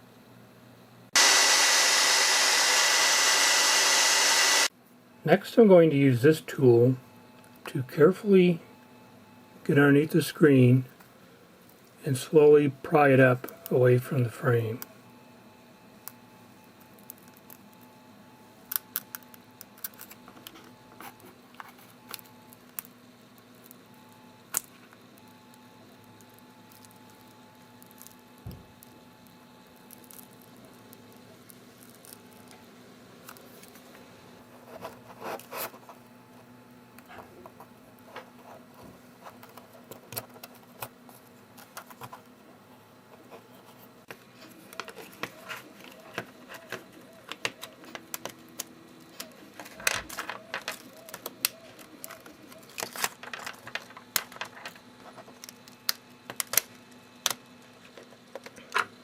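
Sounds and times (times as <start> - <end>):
faint steady hum: 0.0 - 59.0.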